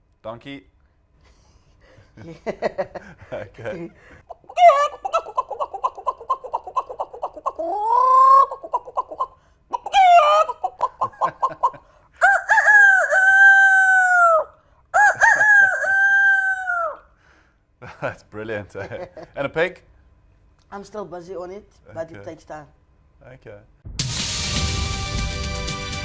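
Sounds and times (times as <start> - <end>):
person clucking like a chicken: 4.3 - 17.1
person imitating rooster crow: 4.5 - 5.0, 7.6 - 8.5, 9.9 - 10.6, 12.2 - 17.1.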